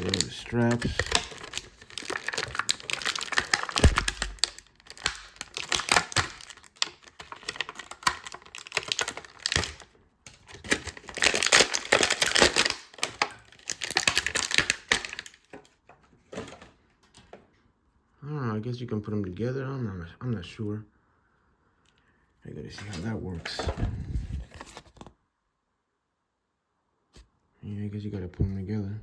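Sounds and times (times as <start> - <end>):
plastic packaging rustling: 0.0 - 17.5, 22.7 - 25.2.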